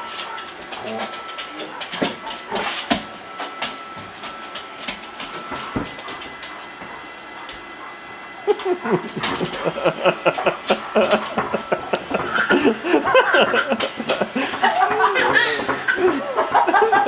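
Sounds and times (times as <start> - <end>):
people laughing: 8.4 - 17.0.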